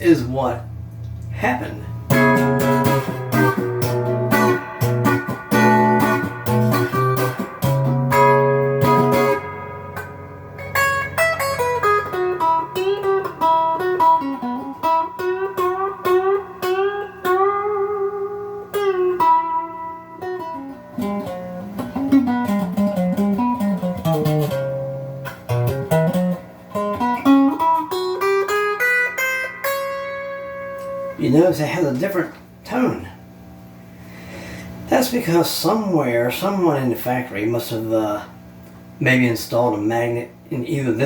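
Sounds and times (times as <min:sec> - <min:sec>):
electric guitar licks with bends: 0:00.7 - 0:31.2.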